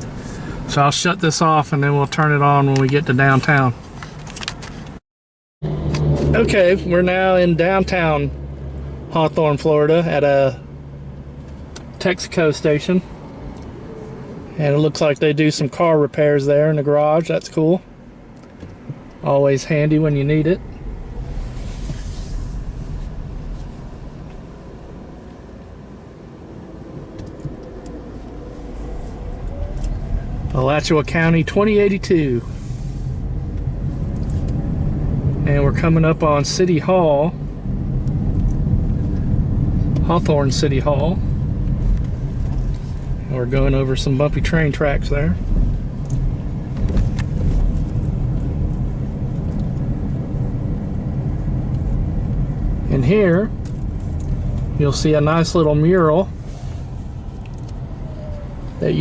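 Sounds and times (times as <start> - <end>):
engine and road rumble: 0.0 - 5.0, 5.6 - 59.0
tyre hiss: 0.0 - 5.0.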